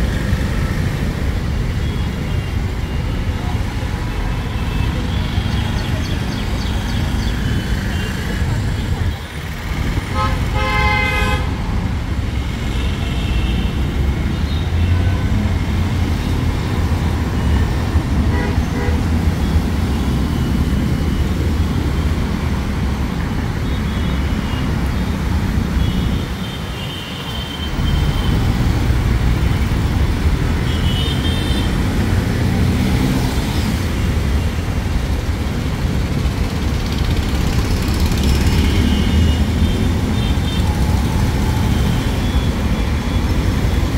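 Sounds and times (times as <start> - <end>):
vehicle horns honking: 10.1 - 11.6, 18.2 - 20.5, 30.6 - 31.8, 38.5 - 40.8
vehicle engines running: 27.6 - 43.9.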